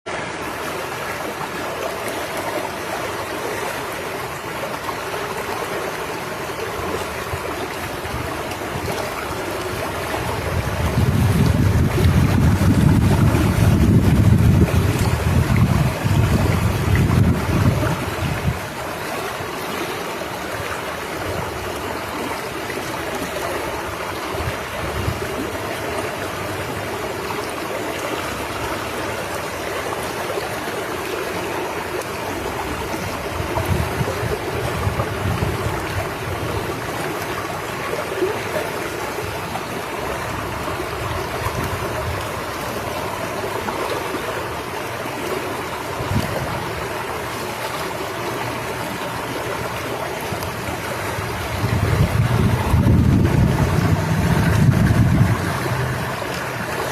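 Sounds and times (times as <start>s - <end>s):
water rushing: 0.0s - 56.9s
wind buffeting microphone: 6.8s - 18.9s, 23.7s - 27.4s, 31.8s - 38.0s, 39.0s - 47.2s, 49.0s - 56.9s.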